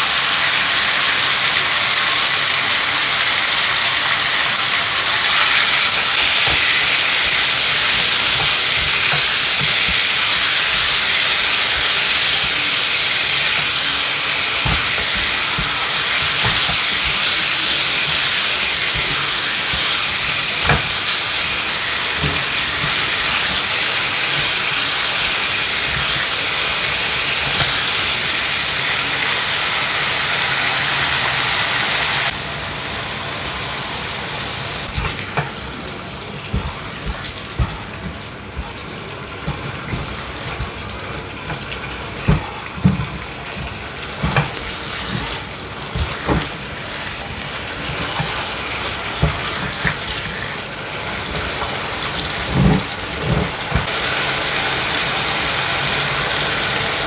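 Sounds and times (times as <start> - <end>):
food sizzling in hot oil: 0.0 - 57.0
spatula knocking against pan: 5.8 - 28.6, 36.5 - 48.6.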